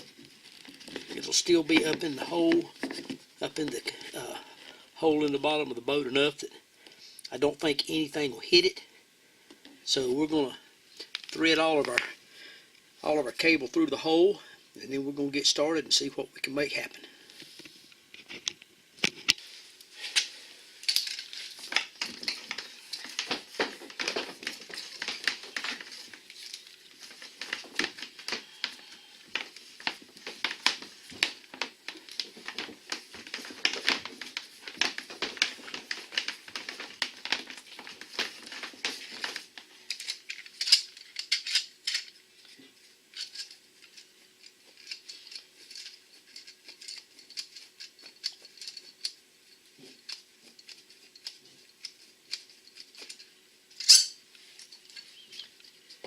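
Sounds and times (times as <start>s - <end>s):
plastic parts clicking and rattling: 20.2s - 49.2s, 49.8s - 56.0s.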